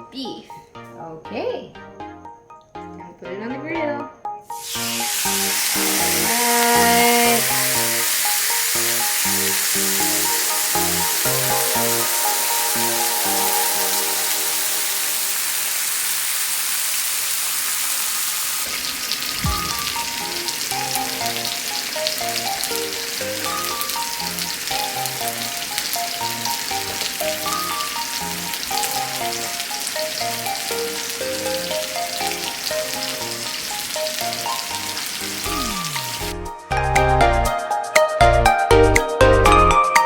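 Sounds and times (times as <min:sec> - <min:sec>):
electronic background music: 0:00.0 - 0:15.7, 0:19.4 - 0:40.0
meat sizzling on a grill: 0:04.6 - 0:36.4.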